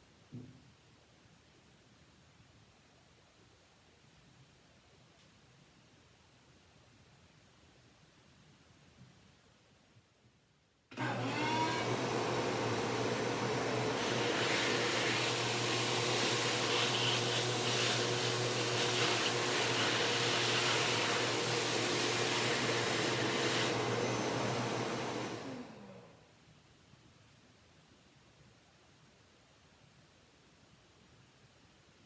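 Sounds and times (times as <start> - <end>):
electric motor running: 11.0 - 25.9.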